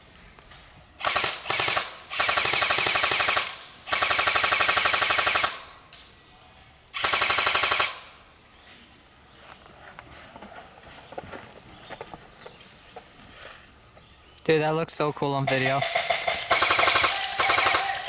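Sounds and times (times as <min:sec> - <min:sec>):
airsoft gun firing bursts: 0:01.0 - 0:05.7, 0:07.0 - 0:08.1, 0:15.5 - 0:18.0.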